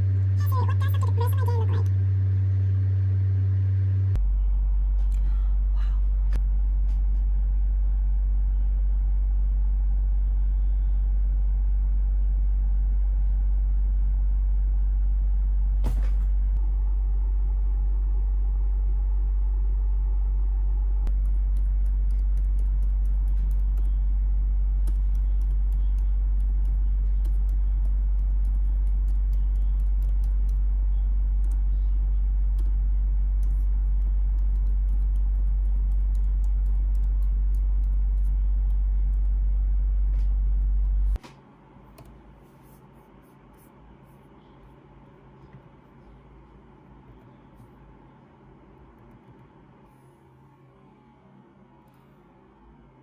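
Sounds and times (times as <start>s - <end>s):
loud low hum: 0.0s - 53.0s
typing on laptop keyboard: 21.1s - 23.9s, 24.8s - 30.6s, 33.4s - 38.3s.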